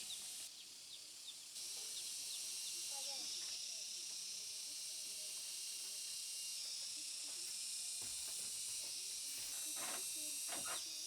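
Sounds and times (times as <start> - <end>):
high-pitched insect chorus: 0.0 - 8.6.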